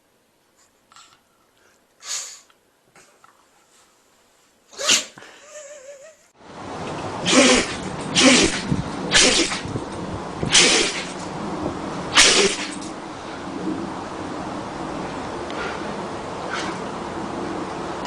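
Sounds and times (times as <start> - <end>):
steady background hiss: 0.0 - 18.0
person sneezing: 4.7 - 5.4, 7.2 - 9.6.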